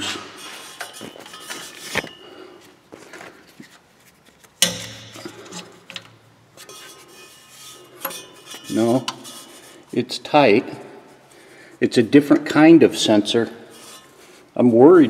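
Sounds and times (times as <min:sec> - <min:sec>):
light metallic clinks and rubbing: 0:00.4 - 0:02.4, 0:03.5 - 0:10.0, 0:13.3 - 0:14.4.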